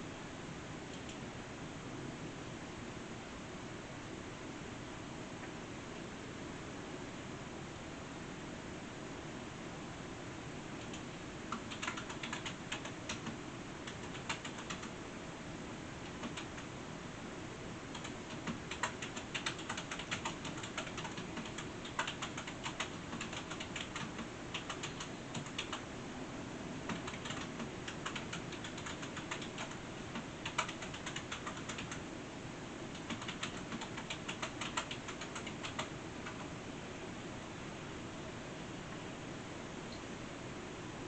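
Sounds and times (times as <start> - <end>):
steady low hiss: 0.0 - 41.0
quick light irregular clicks: 0.9 - 1.2, 10.8 - 14.9, 16.0 - 16.7, 17.9 - 25.8, 26.9 - 32.0, 32.9 - 36.5.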